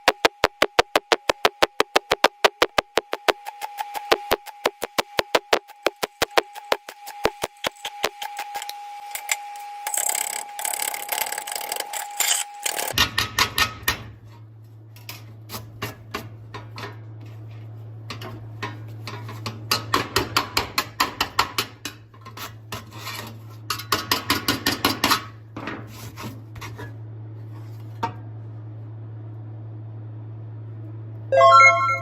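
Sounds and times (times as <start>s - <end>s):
low hum: 0.0s - 9.2s, 28.2s - 32.0s
hand tool scraping metal: 4.2s - 13.0s, 22.1s - 24.1s.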